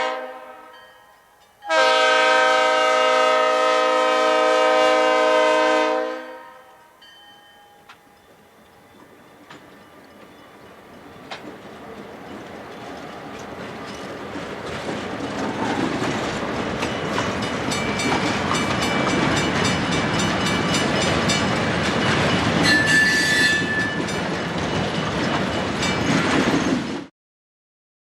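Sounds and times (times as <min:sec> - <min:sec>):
train rolling past: 0:00.0 - 0:27.1
wheels clicking over rail joints: 0:07.8 - 0:27.0.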